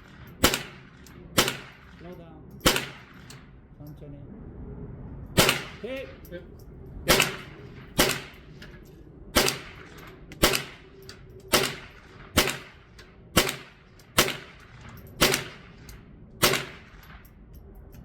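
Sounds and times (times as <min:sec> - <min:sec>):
rifle gunshots: 0:00.0 - 0:03.5, 0:05.4 - 0:05.9, 0:07.1 - 0:08.5, 0:09.3 - 0:10.9, 0:11.5 - 0:17.2.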